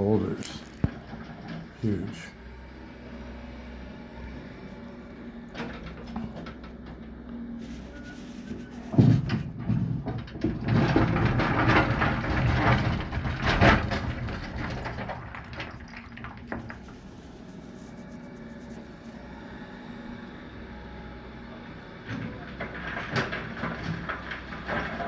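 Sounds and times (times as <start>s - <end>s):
concrete and rock clattering: 0.0s - 1.8s, 7.8s - 17.7s, 22.1s - 25.0s
machinery hum: 0.0s - 10.0s.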